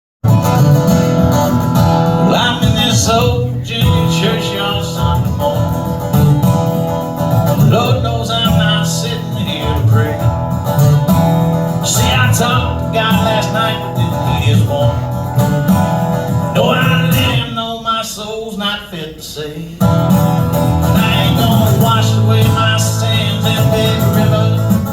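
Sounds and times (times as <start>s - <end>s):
country guitar playing: 0.2s - 24.9s.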